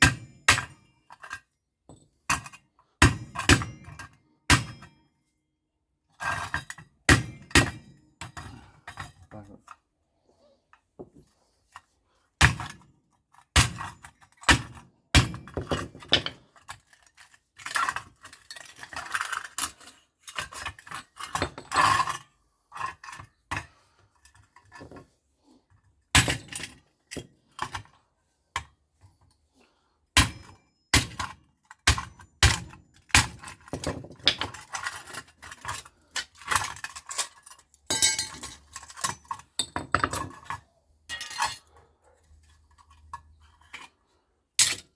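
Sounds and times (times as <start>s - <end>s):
loose metal pieces clinking: 33.7s - 41.7s, 44.6s - 44.9s
metal parts knocking: 37.9s - 40.5s.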